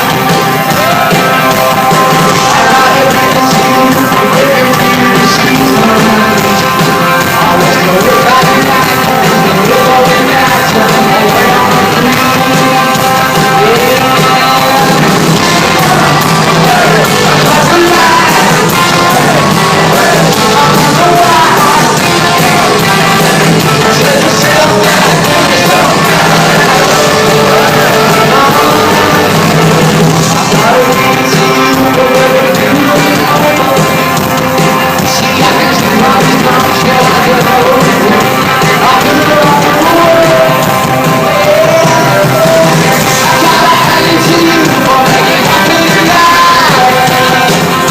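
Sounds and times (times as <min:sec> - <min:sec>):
rock band playing live: 0:00.0 - 0:47.9.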